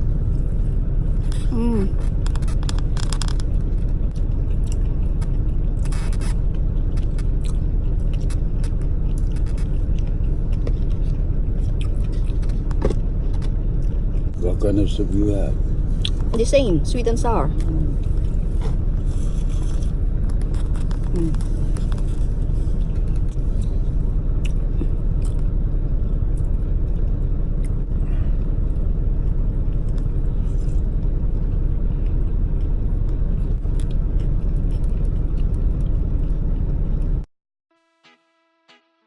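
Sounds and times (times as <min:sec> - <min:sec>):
engine idling: 0:00.0 - 0:37.2
chewing and biting: 0:01.2 - 0:14.4, 0:17.5 - 0:37.3
eating clicks and scrapes: 0:01.2 - 0:14.4, 0:18.0 - 0:23.8.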